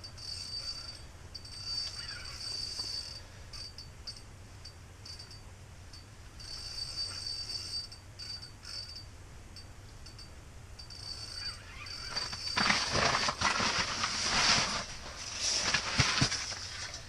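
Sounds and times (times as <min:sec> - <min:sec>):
fishing reel drag buzzing: 0:11.0 - 0:12.6.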